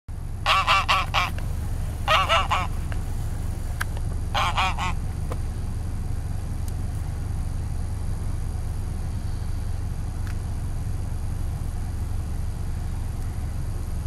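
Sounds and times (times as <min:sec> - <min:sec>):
goose honking: 0:00.4 - 0:05.1.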